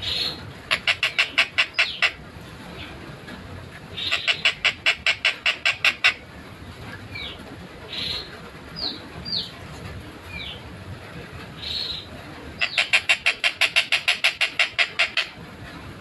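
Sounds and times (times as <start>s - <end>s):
kingfisher calling: 0.0s - 2.2s, 3.9s - 6.2s, 11.6s - 15.4s.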